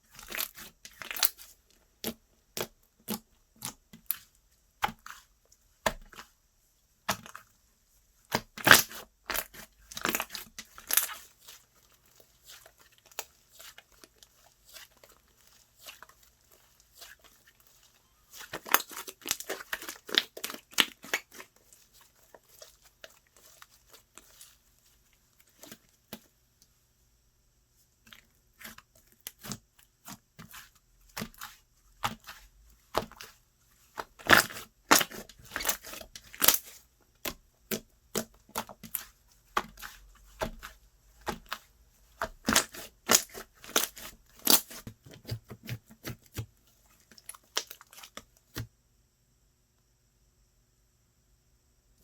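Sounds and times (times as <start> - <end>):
slime squished by hand: 8.3 - 26.3, 28.0 - 48.7.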